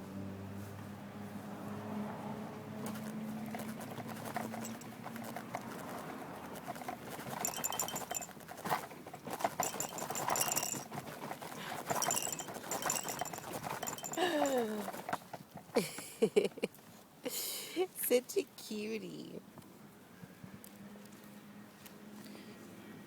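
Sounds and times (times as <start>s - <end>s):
stroller wheels clattering: 0.1s - 17.1s.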